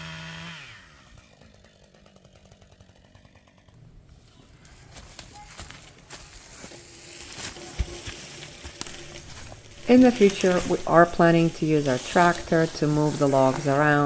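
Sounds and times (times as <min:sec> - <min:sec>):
chainsaw engine winding down: 0:00.0 - 0:04.3.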